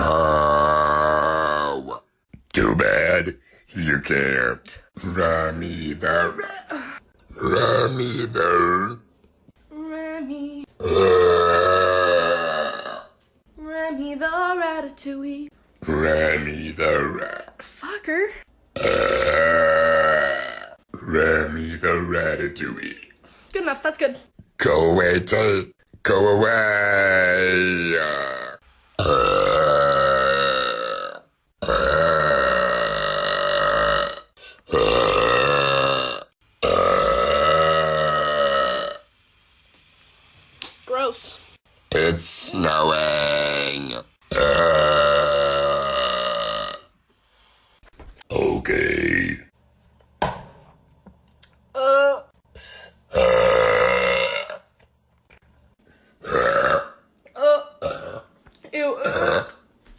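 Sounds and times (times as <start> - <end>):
person belching: 0.0 - 2.1, 5.0 - 9.0, 10.8 - 13.2, 15.8 - 17.6, 18.8 - 21.8, 26.1 - 39.1, 42.5 - 46.9, 48.3 - 49.5, 53.1 - 54.7, 56.2 - 58.3, 58.9 - 59.6
person burping loudly: 0.0 - 2.1, 5.0 - 9.0, 10.8 - 13.2, 15.8 - 17.7, 18.8 - 21.8, 26.1 - 39.1, 42.5 - 47.0, 48.3 - 49.5, 53.1 - 54.7, 56.2 - 59.7.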